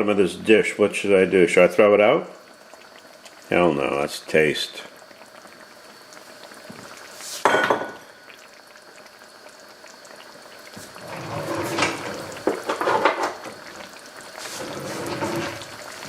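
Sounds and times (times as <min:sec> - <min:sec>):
sauce simmering in a pan: 0:00.0 - 0:16.0
dishes and utensils clattering: 0:11.0 - 0:13.4, 0:14.6 - 0:15.7.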